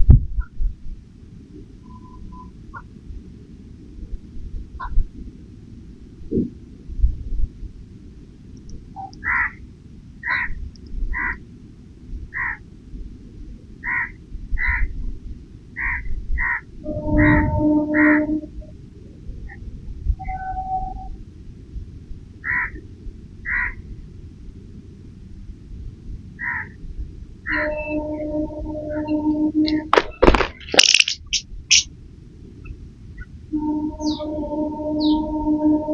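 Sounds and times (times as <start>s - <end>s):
low hum: 16.8s - 22.0s, 27.1s - 31.8s, 32.4s - 35.9s
squirrel chirping: 30.8s - 31.9s.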